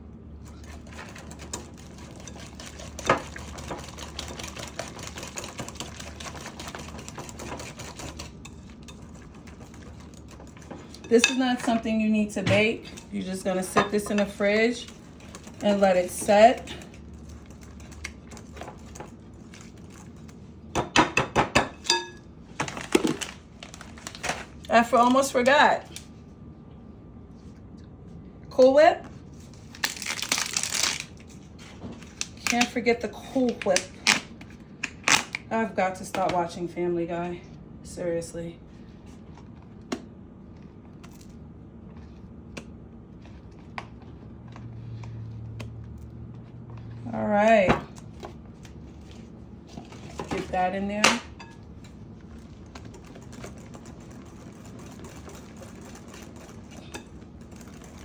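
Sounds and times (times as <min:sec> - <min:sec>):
low steady hum: 0:00.0 - 0:58.0
dishes and utensils clattering: 0:20.8 - 0:23.3.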